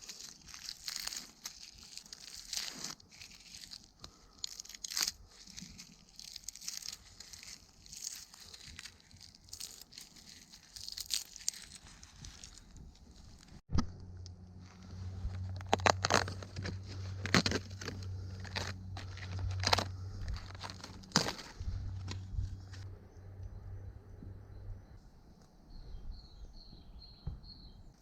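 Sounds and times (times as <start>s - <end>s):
dry material crunching and tearing: 0.0s - 13.6s, 14.6s - 22.8s.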